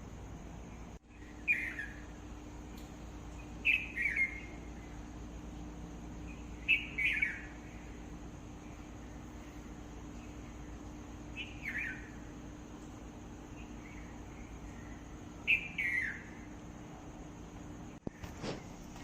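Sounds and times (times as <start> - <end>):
faint steady hum: 0.0 - 19.0
bird calling: 1.1 - 2.2, 3.3 - 5.2, 6.2 - 8.0, 8.7 - 12.4, 13.5 - 16.5.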